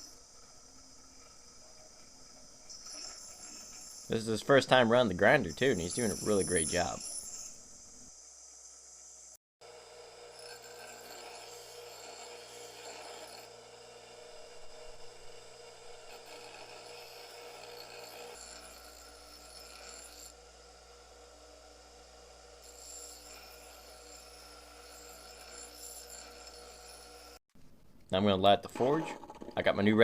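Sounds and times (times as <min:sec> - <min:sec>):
grinder rasping on steel: 0:02.6 - 0:08.0, 0:09.8 - 0:21.6, 0:22.6 - 0:27.4.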